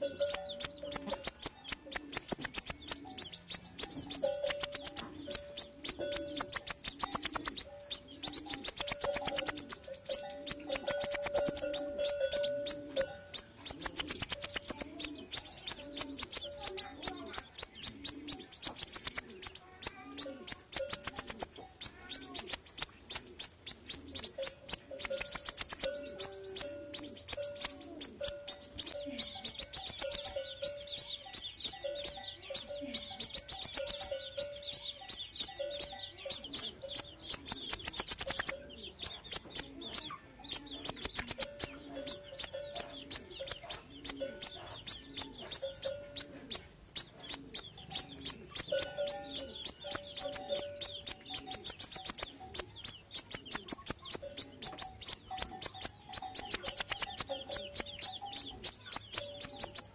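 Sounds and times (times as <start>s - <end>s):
high bird chirps: 0.0s - 59.9s.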